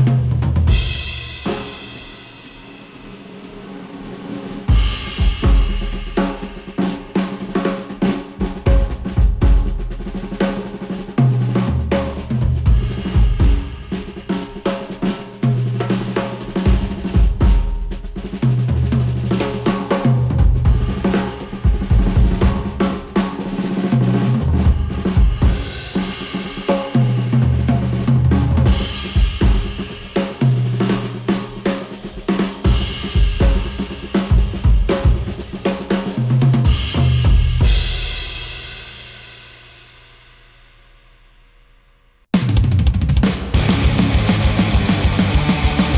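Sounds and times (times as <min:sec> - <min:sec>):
drum kit beat: 0:00.0 - 0:41.2, 0:42.3 - 0:45.9
bass line: 0:43.6 - 0:45.9.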